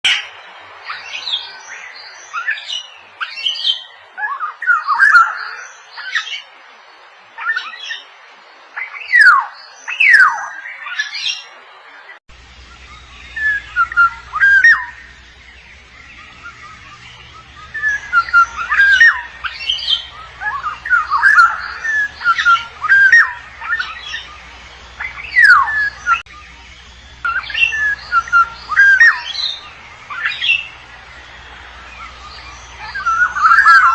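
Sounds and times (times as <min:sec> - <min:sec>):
oriole calls: 0:12.5 - 0:33.9.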